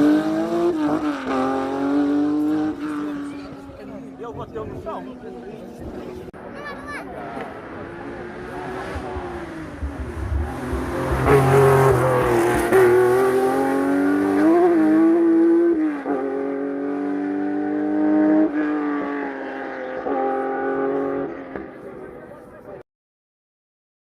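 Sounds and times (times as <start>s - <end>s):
car engine accelerating past: 7.2s - 22.2s.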